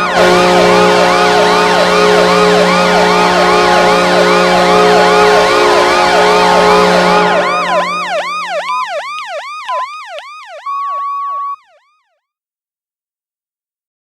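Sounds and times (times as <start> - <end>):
goal horn low chord: 0.0 - 9.0
steady higher tone: 0.0 - 11.7
sweeping siren: 0.0 - 12.0.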